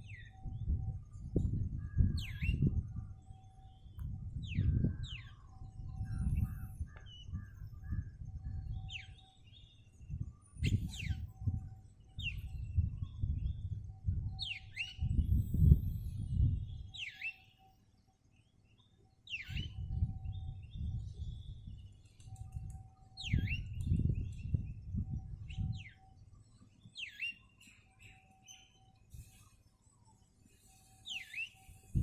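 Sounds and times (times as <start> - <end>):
low rumble in gusts: 0.0 - 17.0, 19.6 - 26.4
bird whistles sweeping downward: 14.4 - 17.5, 19.3 - 20.9, 23.2 - 26.1, 28.4 - 32.0
short bird chirps: 27.0 - 32.0.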